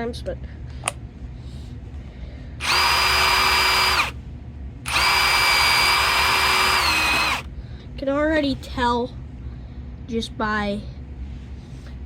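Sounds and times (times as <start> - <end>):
power drill running: 2.6 - 4.2, 4.9 - 7.5.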